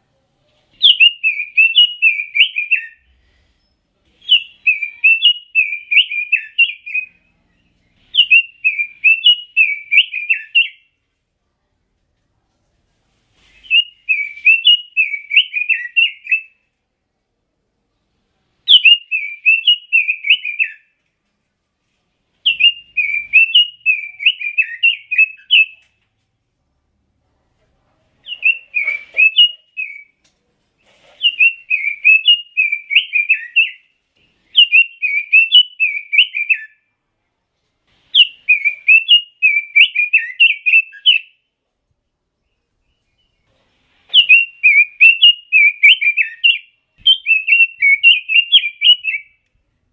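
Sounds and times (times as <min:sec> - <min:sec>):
bird singing warbled phrases: 0:00.7 - 0:03.1, 0:04.2 - 0:10.9, 0:13.6 - 0:16.6, 0:18.7 - 0:20.9, 0:22.4 - 0:25.9, 0:28.2 - 0:30.2, 0:31.2 - 0:33.9, 0:34.5 - 0:36.8, 0:38.1 - 0:41.4, 0:44.1 - 0:49.4.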